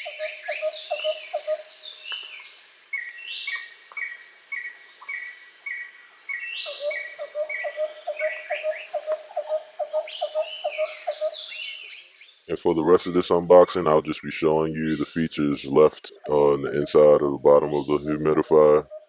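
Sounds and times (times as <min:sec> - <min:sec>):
birds chirping and singing: 0:00.0 - 0:19.0
bird repeating low note: 0:12.5 - 0:19.0.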